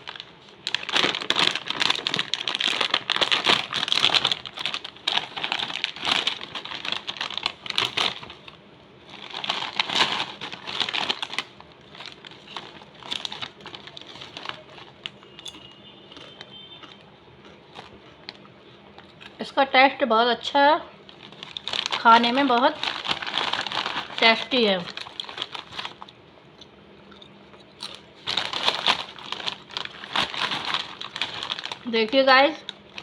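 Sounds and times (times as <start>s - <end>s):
plastic wrapper crinkling: 0.0s - 16.6s, 21.0s - 26.2s, 27.8s - 33.0s.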